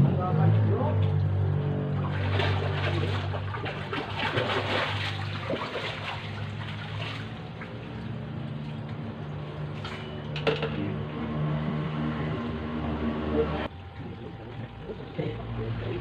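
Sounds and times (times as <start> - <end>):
low steady hum: 0.0 - 16.0
water trickling and splashing: 1.0 - 10.4.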